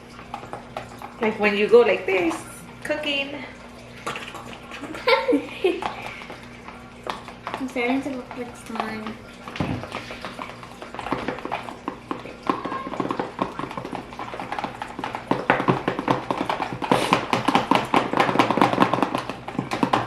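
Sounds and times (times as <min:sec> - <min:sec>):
utensils tapping plastic containers: 0:07.0 - 0:20.0.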